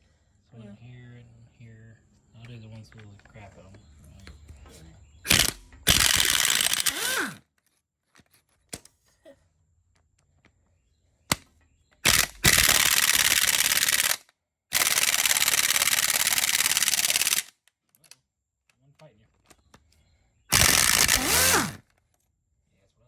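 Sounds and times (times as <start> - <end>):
impact wrench hammering: 5.3 - 7.4, 20.5 - 21.8.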